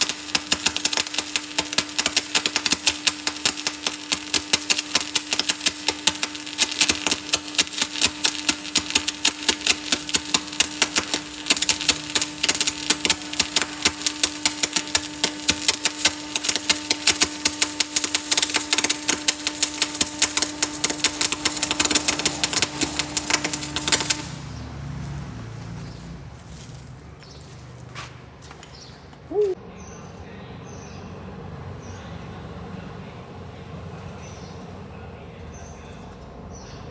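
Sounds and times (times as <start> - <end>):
rapid sharp clicks: 0.0 - 24.5
machine humming: 0.0 - 27.8.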